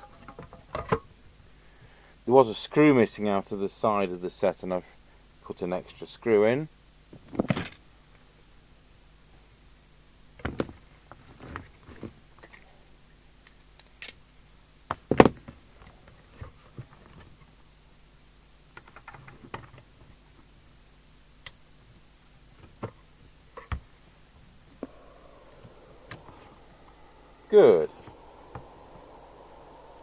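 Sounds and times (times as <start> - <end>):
faint low hum: 20.2 - 30.0.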